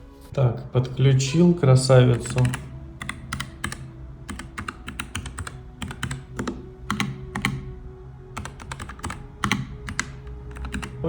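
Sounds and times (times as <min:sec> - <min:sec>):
mechanical keyboard typing: 0:02.1 - 0:07.7, 0:08.4 - 0:11.0.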